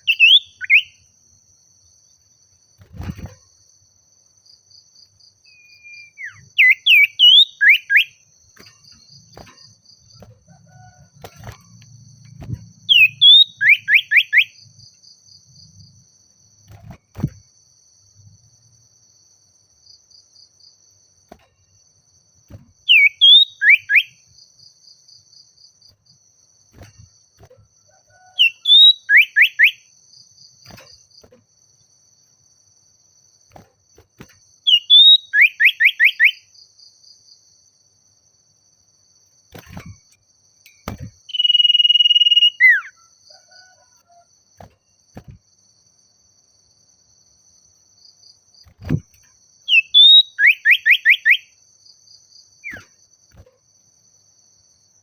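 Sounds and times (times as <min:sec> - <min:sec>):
bird singing whistled phrases: 0:00.0 - 0:01.0, 0:05.5 - 0:08.2, 0:12.8 - 0:14.6, 0:22.9 - 0:24.2, 0:28.4 - 0:29.8, 0:34.7 - 0:36.4, 0:41.3 - 0:42.9, 0:49.7 - 0:51.5.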